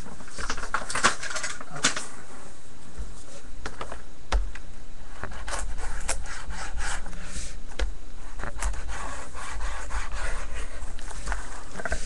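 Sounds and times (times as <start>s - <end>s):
cardboard and cards rubbing: 5.0s - 12.0s.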